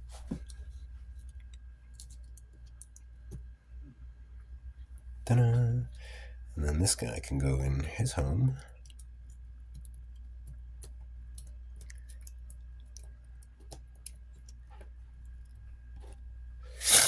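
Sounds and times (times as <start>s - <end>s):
steady low hum: 0.0s - 17.0s
small clicks and taps of tools: 8.8s - 16.2s.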